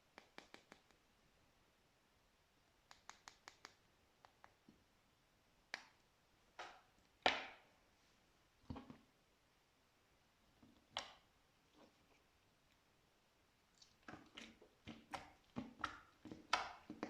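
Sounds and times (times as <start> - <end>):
slime squelching: 13.6 - 17.0.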